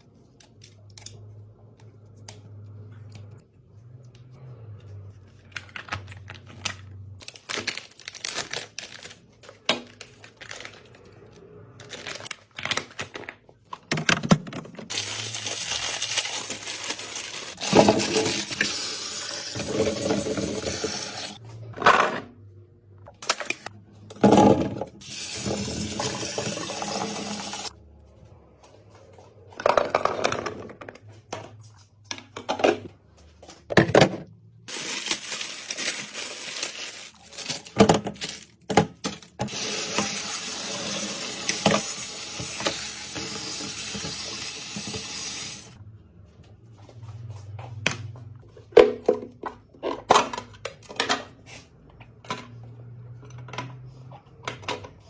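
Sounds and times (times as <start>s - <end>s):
clicks and knocks of containers: 11.9s - 15.0s, 29.5s - 34.4s, 47.8s - 55.0s.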